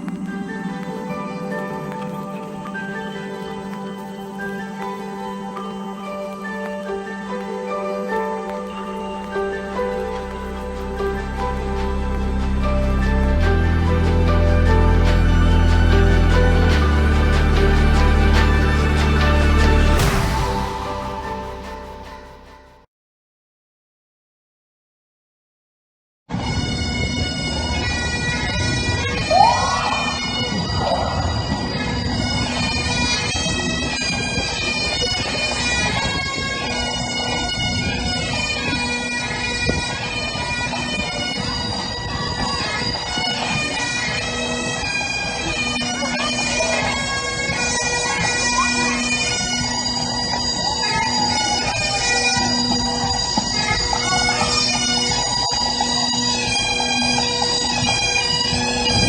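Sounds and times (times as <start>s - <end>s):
bagpipes playing over drone: 0.0s - 22.8s, 26.4s - 59.0s
short loud rising sound: 8.9s - 22.8s.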